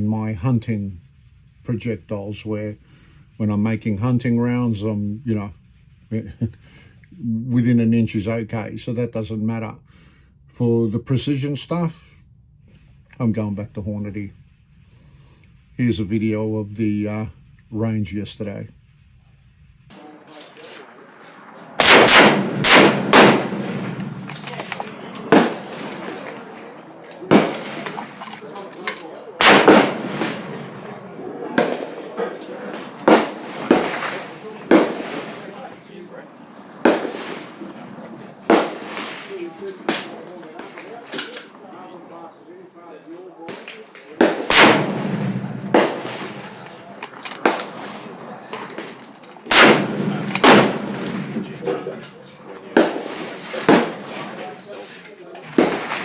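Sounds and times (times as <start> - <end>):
rifle shots echoing: 19.9 - 42.2, 43.5 - 56.0.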